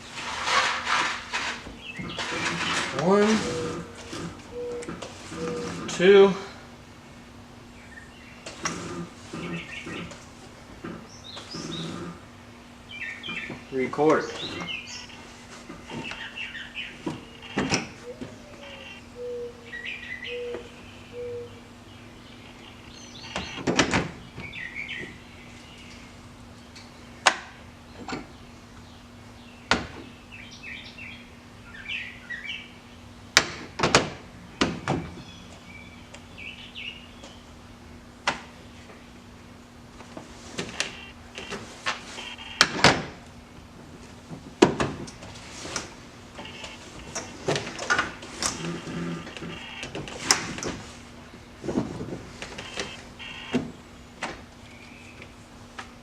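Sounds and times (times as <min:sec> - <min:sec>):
steady low hum: 0:00.0 - 0:56.0
birds chirping: 0:01.7 - 0:06.7, 0:07.6 - 0:27.2, 0:27.8 - 0:33.4, 0:34.5 - 0:37.7, 0:40.6 - 0:41.6.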